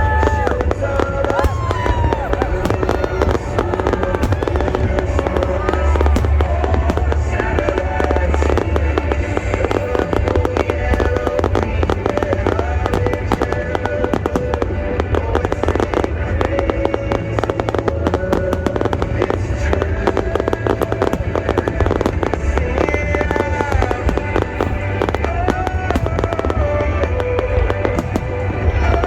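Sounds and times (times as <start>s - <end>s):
deep rumble: 0.0s - 29.0s
fireworks crackling and banging: 0.0s - 29.0s
music: 0.0s - 29.0s.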